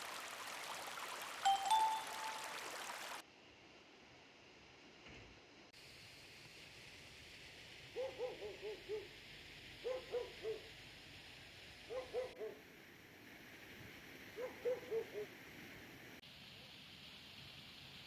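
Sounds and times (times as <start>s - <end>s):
distant dog barking: 8.0s - 9.1s, 9.8s - 10.7s, 11.9s - 12.6s, 14.4s - 15.3s
steady hiss: 12.6s - 18.0s.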